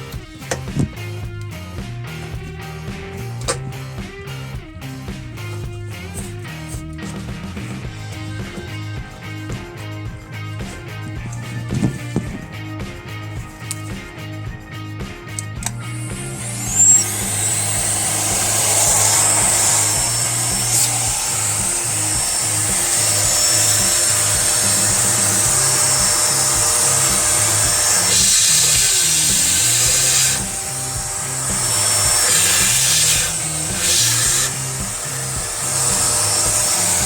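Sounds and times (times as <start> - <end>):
background music with bass line: 0.0 - 37.0
appliance rushing air hiss: 15.6 - 37.0.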